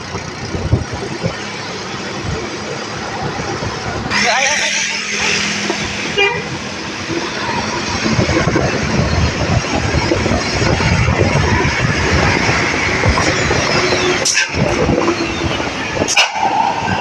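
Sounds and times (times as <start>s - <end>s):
road traffic: 0.0s - 17.0s
car horn toot: 4.1s - 6.5s.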